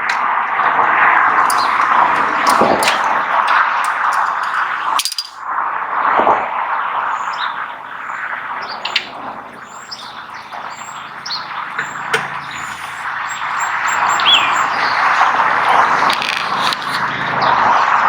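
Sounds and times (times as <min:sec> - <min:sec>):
small birds chirping: 0:01.2 - 0:05.4, 0:07.0 - 0:18.0.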